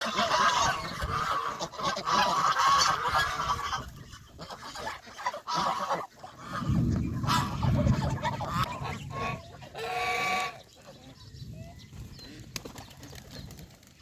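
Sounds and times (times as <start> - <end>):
geese honking: 0.0 - 11.1.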